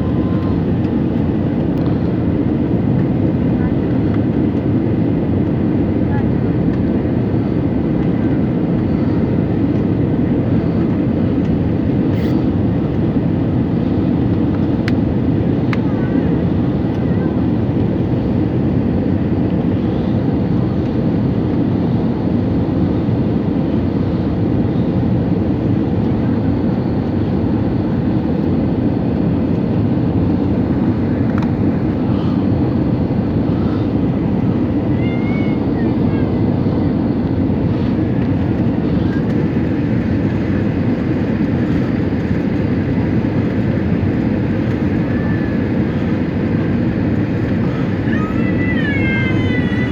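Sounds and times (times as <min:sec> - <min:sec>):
airplane cabin engine rumble: 0:00.0 - 0:49.9.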